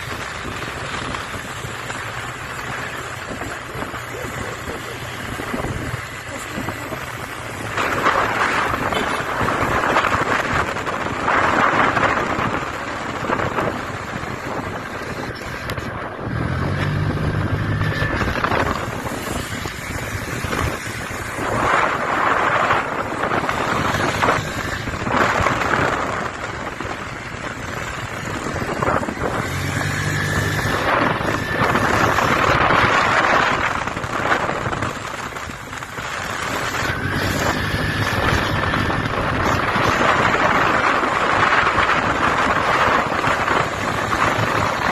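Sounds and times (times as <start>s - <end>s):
motorcycle engine running: 0.0s - 44.9s
road noise: 0.0s - 44.9s
wind buffeting microphone: 0.0s - 44.9s.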